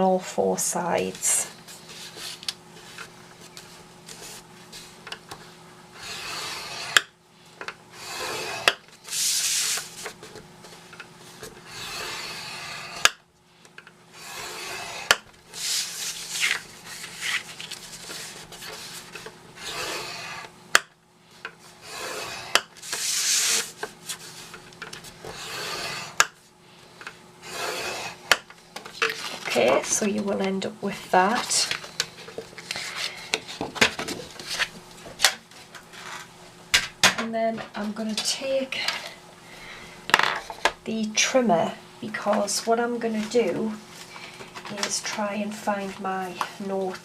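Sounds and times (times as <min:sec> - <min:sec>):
scoring tool scraping cardstock: 0:06.0 - 0:07.0, 0:07.9 - 0:13.1, 0:14.2 - 0:20.5, 0:21.7 - 0:26.2, 0:27.4 - 0:28.4.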